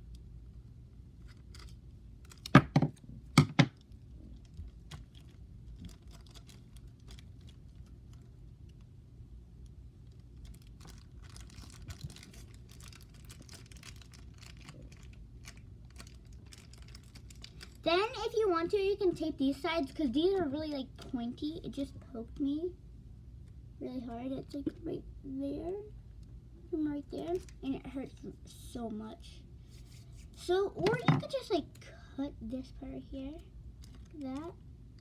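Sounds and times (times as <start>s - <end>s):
small clicks and crinkles: 0.0s - 3.0s, 3.7s - 8.9s, 9.6s - 17.9s, 27.2s - 28.9s, 33.3s - 35.0s.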